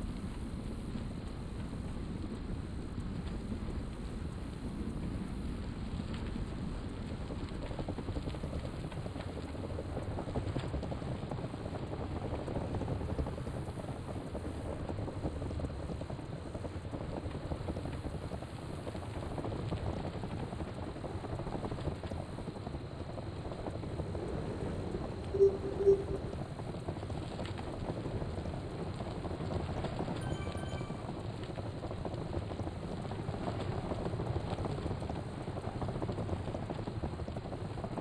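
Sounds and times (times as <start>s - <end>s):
wind buffeting microphone: 19.3s - 30.0s
low rumble: 23.9s - 26.7s.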